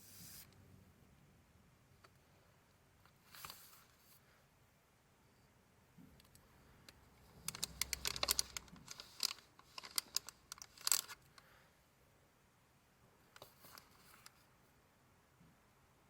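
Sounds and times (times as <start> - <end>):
paper crinkling and rustling: 7.4 - 11.3.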